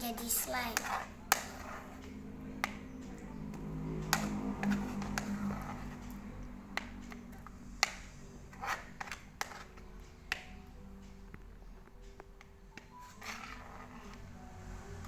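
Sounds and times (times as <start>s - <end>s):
stirrer scraping container: 0.5s - 2.1s, 4.1s - 6.1s, 8.4s - 9.8s, 13.0s - 14.3s.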